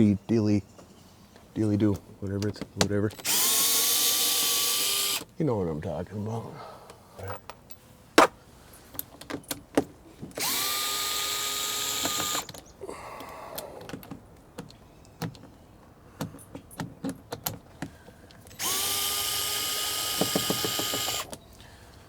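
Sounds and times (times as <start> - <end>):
power drill motor whine: 3.2 - 5.3, 10.4 - 12.6, 18.5 - 21.3.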